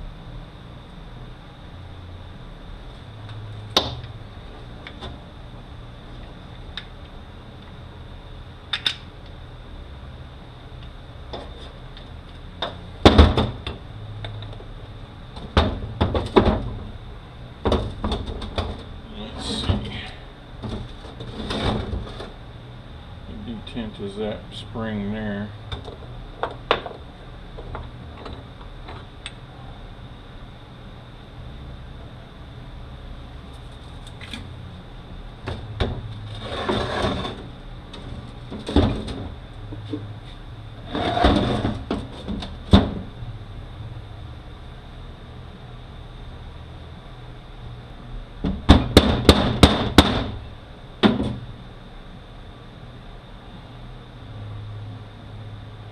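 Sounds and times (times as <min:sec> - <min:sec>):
steady low hum: 0:00.0 - 0:55.9
metal scraping rattle: 0:20.7 - 0:22.3, 0:36.2 - 0:39.4.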